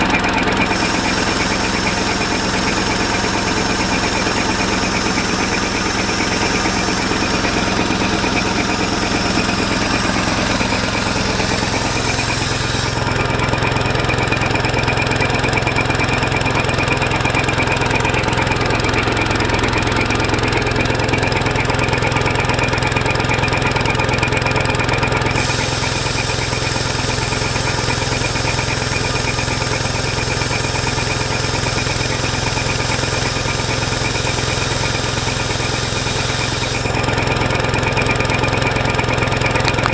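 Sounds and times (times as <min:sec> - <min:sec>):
petrol engine running: 0:00.0 - 0:39.9
high hiss: 0:00.7 - 0:13.2, 0:25.4 - 0:30.8, 0:31.6 - 0:36.9.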